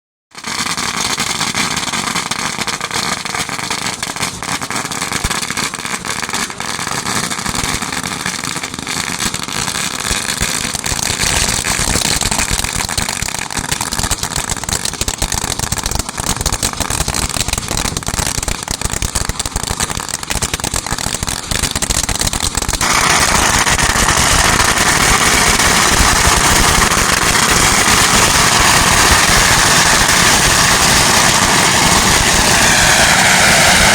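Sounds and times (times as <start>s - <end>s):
bonfire roaring and crackling: 0.8s - 33.9s.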